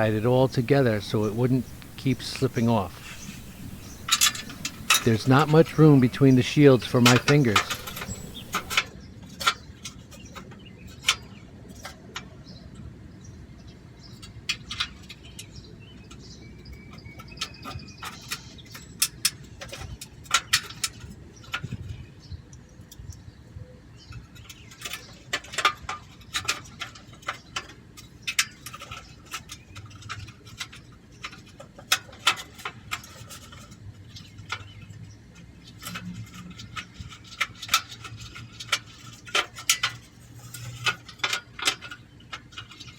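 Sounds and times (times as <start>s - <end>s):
metal heat shields clicking: 0.0s - 8.8s.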